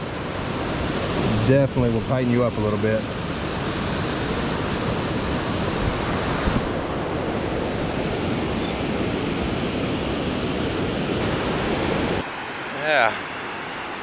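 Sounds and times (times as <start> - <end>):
river water rushing: 0.0 - 2.0, 3.0 - 14.0
wind on microphone: 3.0 - 12.2.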